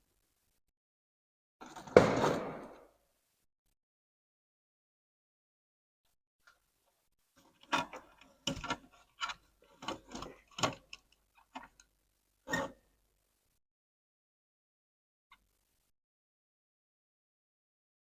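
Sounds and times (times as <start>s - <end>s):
small tools clicking and knocking: 7.4s - 11.9s.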